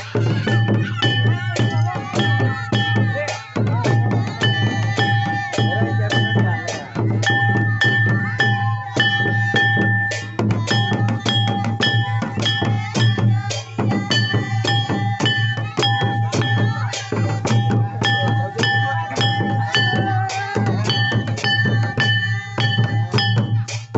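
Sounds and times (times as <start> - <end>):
high ringing tones: 3.9 - 13.4, 14.1 - 23.7.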